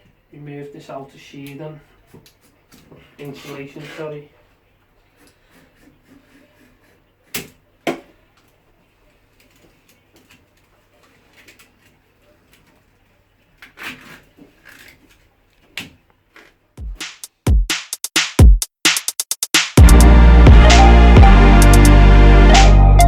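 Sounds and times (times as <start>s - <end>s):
scraping and rustling of sheath: 13.6s - 15.4s.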